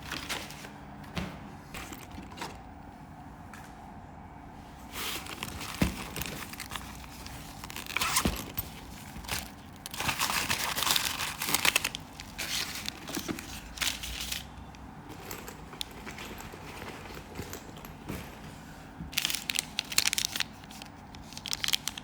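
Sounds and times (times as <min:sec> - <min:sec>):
packaging crinkling and tearing: 0:05.0 - 0:14.8, 0:19.2 - 0:22.0.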